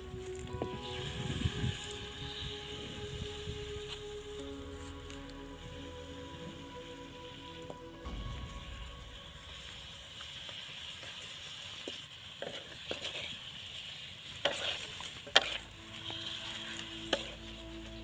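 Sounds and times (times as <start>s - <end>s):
food sizzling in a pan: 0.2s - 5.1s, 5.8s - 18.0s
utensil clicking and scraping: 14.3s - 17.7s.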